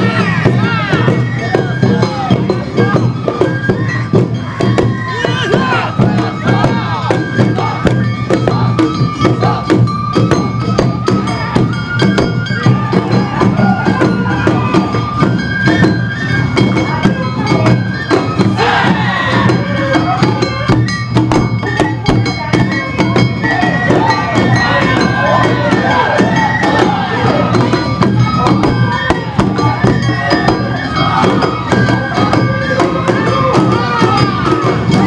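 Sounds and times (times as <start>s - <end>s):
bamboo flute: 0.0s - 35.0s
struck bells: 0.0s - 35.0s.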